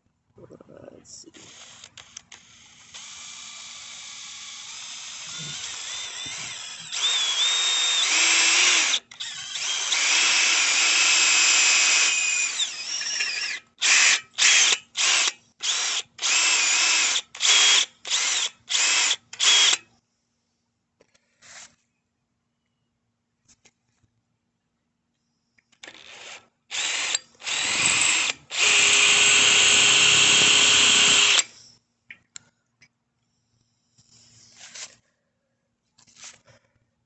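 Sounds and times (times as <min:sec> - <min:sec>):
electric drill boring through metal: 0:01.4 - 0:19.8, 0:25.8 - 0:31.6.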